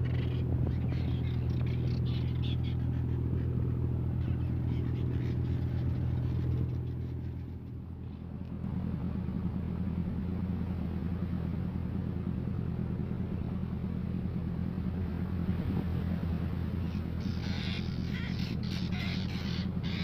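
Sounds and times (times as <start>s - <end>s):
boat engine droning: 0.0s - 20.0s.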